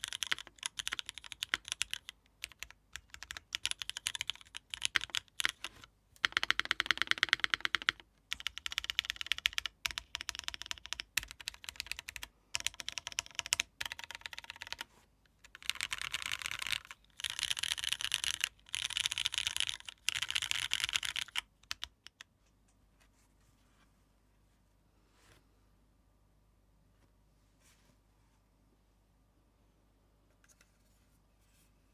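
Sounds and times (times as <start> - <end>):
mechanical keyboard typing: 0.0 - 22.2
faint room hiss: 0.0 - 31.9.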